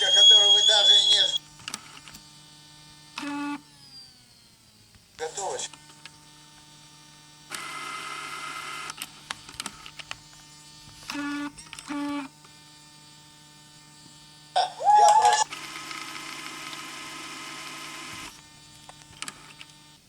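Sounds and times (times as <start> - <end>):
camcorder mechanism whirr: 7.4 - 12.7, 15.2 - 20.0.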